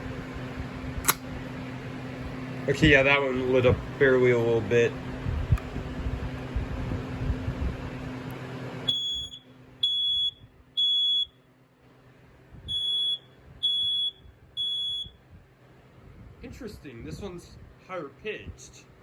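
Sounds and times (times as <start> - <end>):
smoke alarm beeping: 8.9 - 11.4, 12.7 - 15.2.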